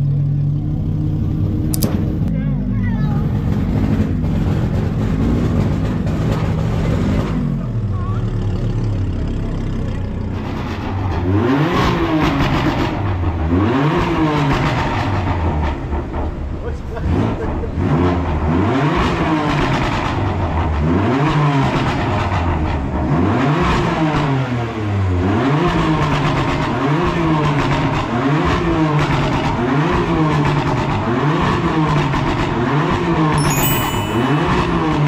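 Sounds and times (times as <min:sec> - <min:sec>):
sports car engine revving: 0:17.0 - 0:22.1.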